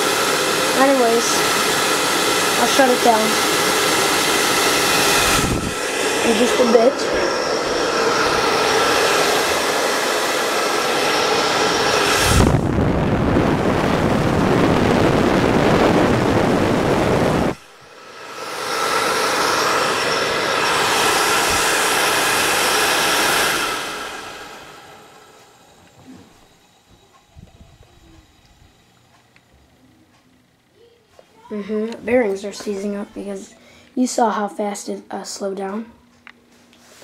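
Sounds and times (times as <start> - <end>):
heavy rushing air: 0.0 - 25.2
motor winding down: 0.0 - 28.8
blower whining: 0.0 - 30.2.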